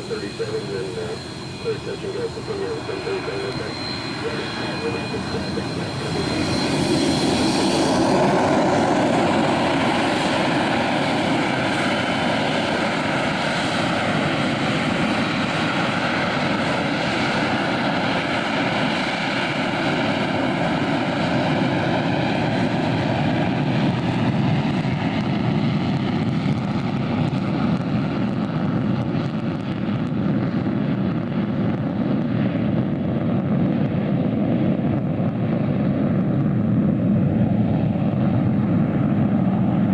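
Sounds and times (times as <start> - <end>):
high whine: 0.0 - 9.9
jet engines running: 0.0 - 39.9.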